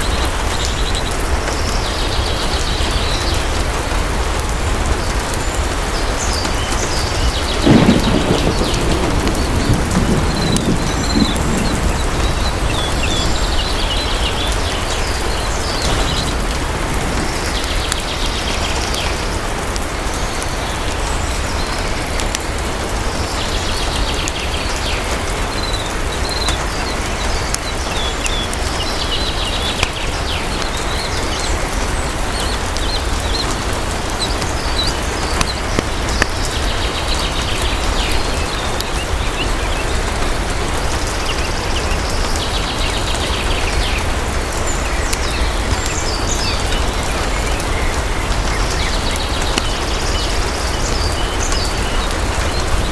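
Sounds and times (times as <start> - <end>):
heavy rain: 0.0 - 52.9
birds chirping: 7.3 - 14.6
low rumble: 7.6 - 13.5.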